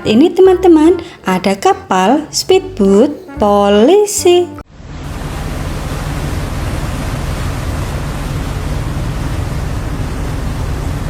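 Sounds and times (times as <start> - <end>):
speedboat motor hum: 4.9 - 11.0
water rushing: 5.1 - 11.0.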